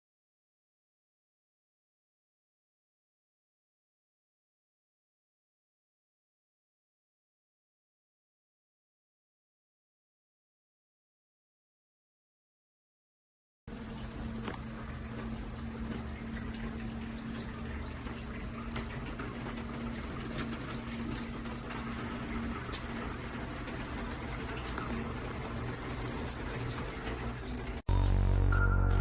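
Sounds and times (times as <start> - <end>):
shower spraying water: 13.7 - 27.8
water drops ticking: 13.7 - 27.8.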